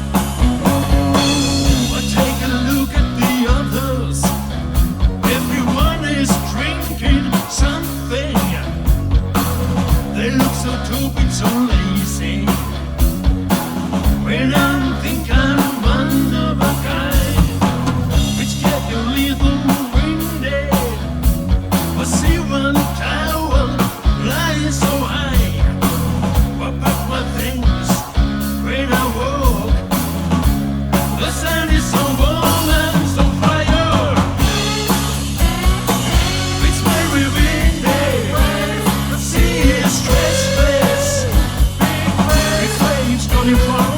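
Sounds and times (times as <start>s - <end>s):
drum beat: 0.0s - 6.0s, 13.0s - 18.9s, 31.8s - 43.9s
bass line: 0.0s - 43.9s.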